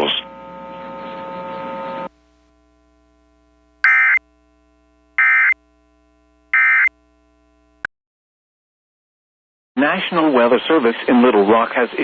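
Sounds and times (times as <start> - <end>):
faint steady hum: 0.0 - 7.9.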